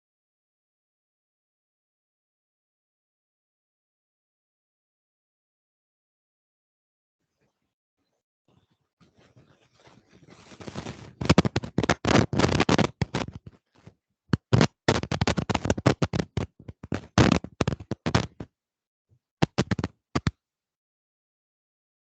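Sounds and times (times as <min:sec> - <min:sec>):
faint rustle: 0:08.5 - 0:14.0
scraping crackling clicks: 0:09.2 - 0:18.5, 0:19.4 - 0:20.3.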